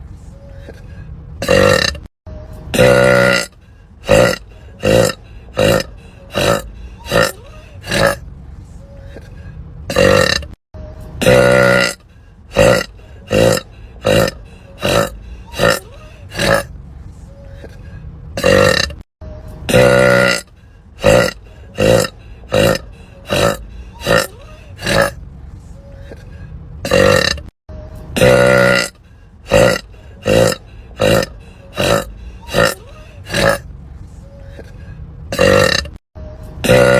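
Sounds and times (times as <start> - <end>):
woman burping: 1.4 - 2.1, 2.7 - 3.5, 4.1 - 8.2, 9.9 - 10.6, 11.2 - 12.0, 12.6 - 16.7, 18.4 - 19.0, 19.7 - 20.4, 21.0 - 25.2, 26.9 - 27.5, 29.5 - 33.6, 35.3 - 36.0, 36.6 - 36.9.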